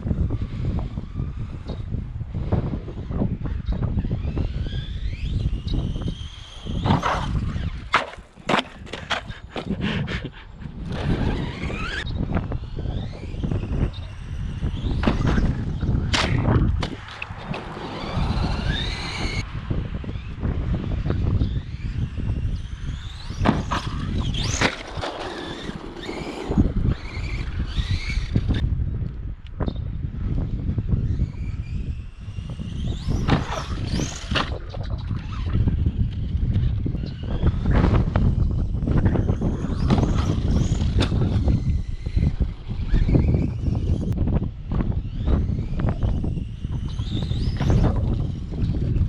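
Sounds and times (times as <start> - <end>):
electric motor whining: 0.0 - 19.5, 20.1 - 28.6, 29.7 - 49.0
wind rumble on microphone: 0.0 - 49.0
toy truck knocks and clatters: 23.4 - 27.9.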